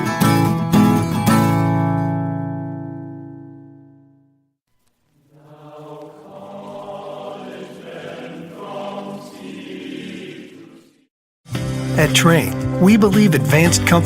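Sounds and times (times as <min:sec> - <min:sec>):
sustained choir-like chord: 0:05.3 - 0:11.1.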